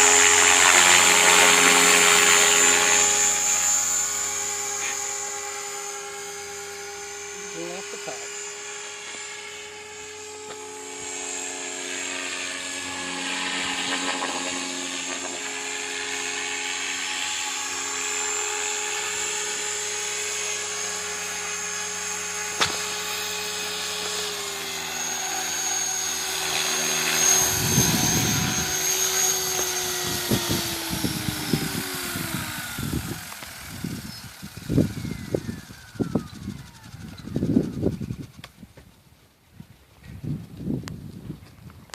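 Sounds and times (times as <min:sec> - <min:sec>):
radio-controlled helicopter whine: 0:00.0 - 0:41.9.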